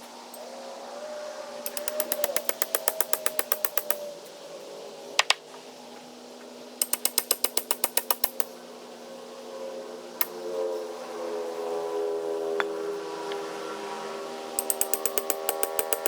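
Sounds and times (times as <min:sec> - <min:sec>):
rapid mechanical clicking: 0:14.6 - 0:16.0.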